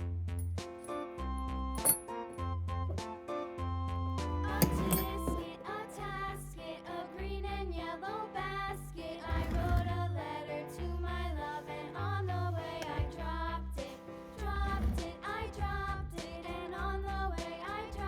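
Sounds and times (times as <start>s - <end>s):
bass line: 0.0s - 5.4s, 10.8s - 11.4s, 12.0s - 13.8s, 14.4s - 18.0s.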